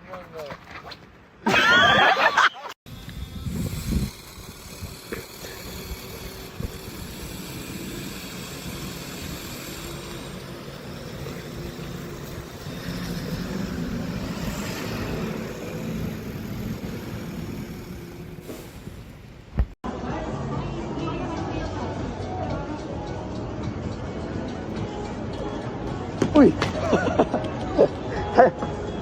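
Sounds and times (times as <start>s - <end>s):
motor vehicle rumbling: 2.9s - 20.0s, 21.8s - 29.0s.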